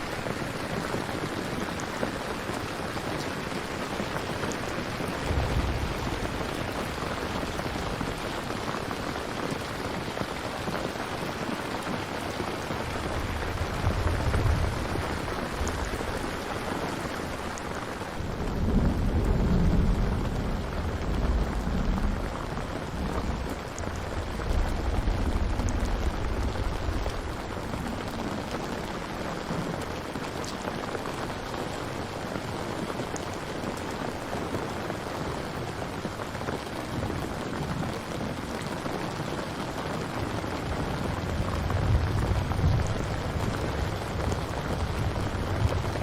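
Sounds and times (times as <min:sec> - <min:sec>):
heavy rain: 0:00.0 - 0:46.0
rolling thunder: 0:04.4 - 0:10.1, 0:12.5 - 0:29.8, 0:40.2 - 0:46.0.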